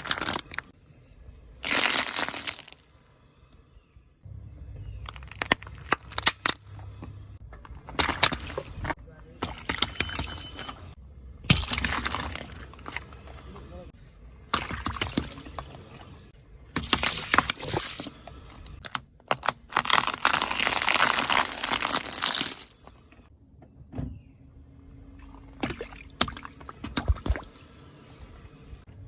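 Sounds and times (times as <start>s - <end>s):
objects crunching under car tyre: 0.0s - 0.7s, 1.6s - 3.0s, 4.8s - 13.8s, 14.5s - 23.3s.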